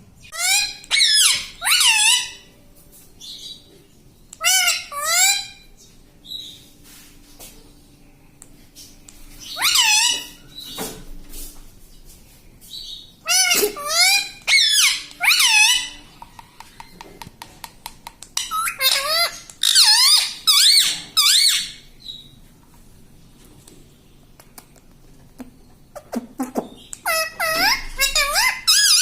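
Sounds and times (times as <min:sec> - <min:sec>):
parakeet squeaky warbling calls: 0:00.3 - 0:02.5, 0:04.4 - 0:05.6, 0:09.4 - 0:10.4, 0:13.3 - 0:16.2, 0:18.4 - 0:21.8, 0:26.0 - 0:29.0.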